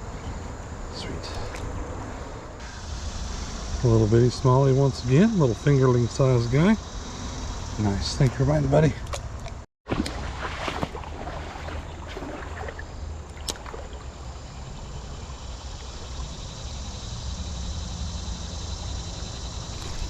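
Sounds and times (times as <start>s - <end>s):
creek water flowing: 9.9s - 17.5s, 19.6s - 20.0s.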